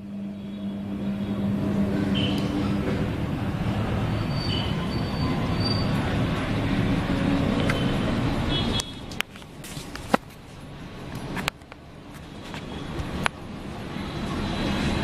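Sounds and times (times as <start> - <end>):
ceiling fan rattling rumble: 0.0 - 8.5.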